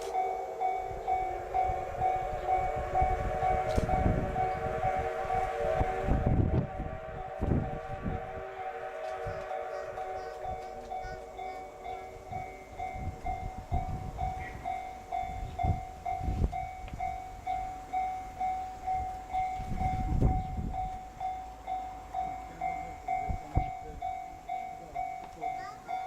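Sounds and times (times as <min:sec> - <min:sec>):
level crossing bell ringing: 0:00.0 - 0:05.6, 0:08.7 - 0:26.0
steam train chuffing: 0:00.0 - 0:26.0.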